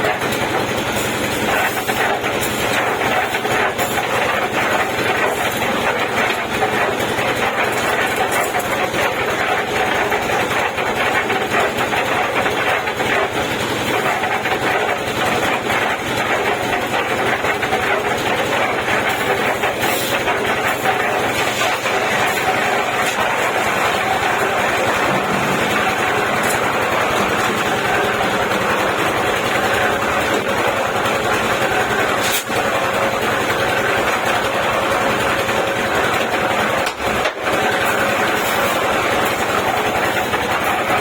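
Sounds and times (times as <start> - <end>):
concrete mixer running: 0.0 - 41.0.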